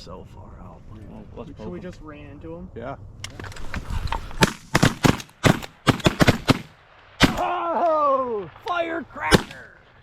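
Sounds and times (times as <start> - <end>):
shotgun blasts: 4.4 - 7.7, 9.2 - 9.7.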